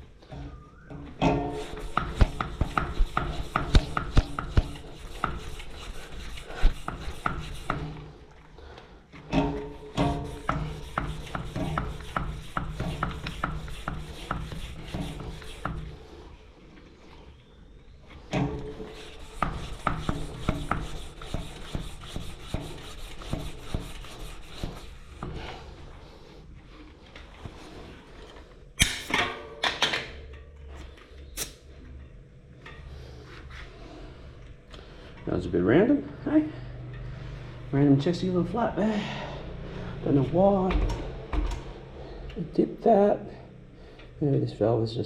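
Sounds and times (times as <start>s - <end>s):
hand pump strokes: 1.4s - 8.1s, 9.4s - 16.0s, 18.6s - 25.4s.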